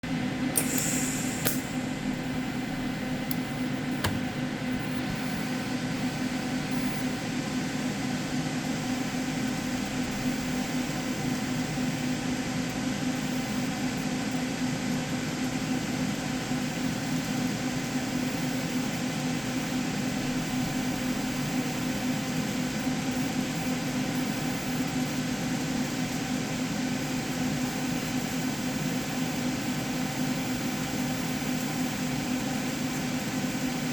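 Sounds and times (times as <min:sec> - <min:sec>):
machine hum: 0:00.2 - 0:05.8
hiss: 0:00.6 - 0:01.8.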